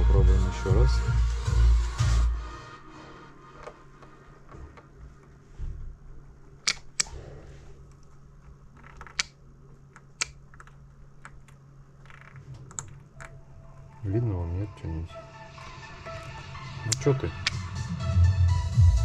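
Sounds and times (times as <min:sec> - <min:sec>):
steady low hum: 0:00.0 - 0:19.0
valve switching clicks: 0:06.6 - 0:07.2, 0:10.2 - 0:10.4, 0:16.9 - 0:17.6.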